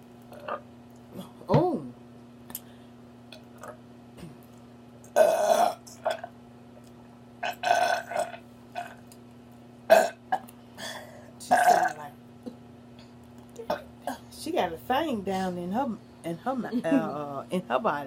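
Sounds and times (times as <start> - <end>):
loud burps: 5.2 - 6.3, 7.4 - 9.0, 9.9 - 10.4, 11.5 - 12.0.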